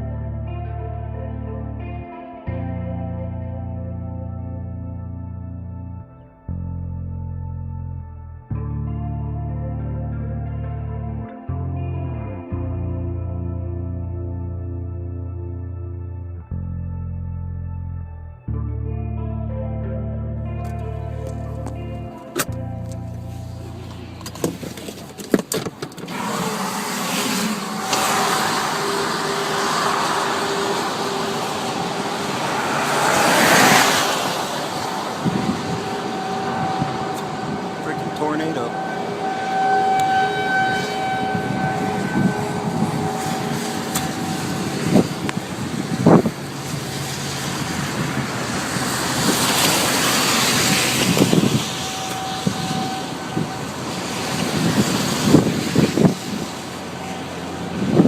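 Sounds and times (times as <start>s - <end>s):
tyre and wind road noise: 20.5s - 58.0s
vehicle passing: 20.6s - 58.0s.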